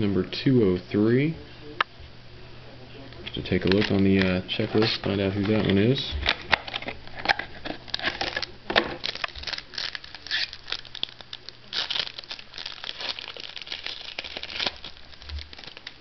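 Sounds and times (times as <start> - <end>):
paper and plastic crinkling: 3.3 - 16.0.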